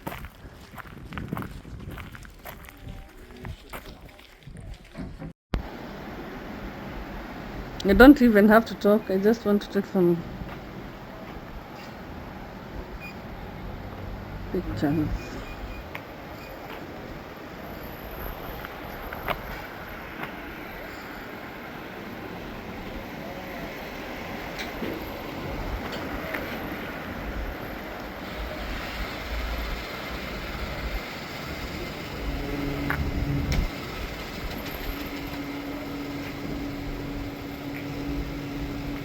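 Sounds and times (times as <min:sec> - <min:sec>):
car road noise rumble: 0:05.2 - 0:09.3, 0:09.9 - 0:39.0
steady low drone: 0:28.0 - 0:39.0.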